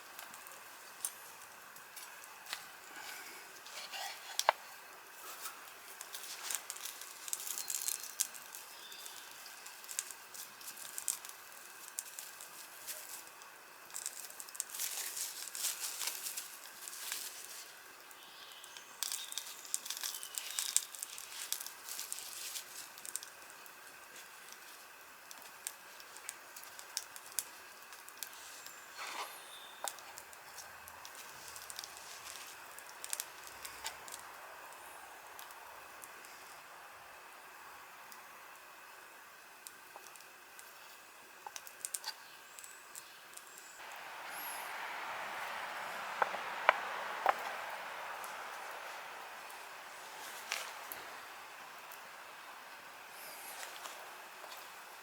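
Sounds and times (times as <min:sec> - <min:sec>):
campfire crackling: 0:00.0 - 0:55.0
fire pops and snaps: 0:03.6 - 0:36.4, 0:39.6 - 0:40.8, 0:41.4 - 0:43.9.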